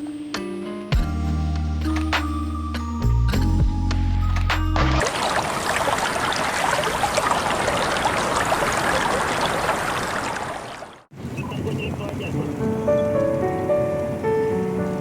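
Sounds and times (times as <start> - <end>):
background music: 0.0 - 5.0
water rushing and splashing: 4.8 - 15.0.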